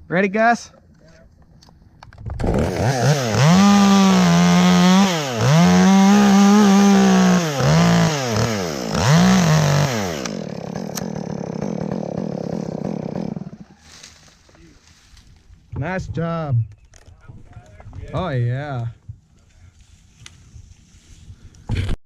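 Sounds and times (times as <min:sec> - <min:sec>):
chainsaw revving and idling: 0:02.4 - 0:14.0.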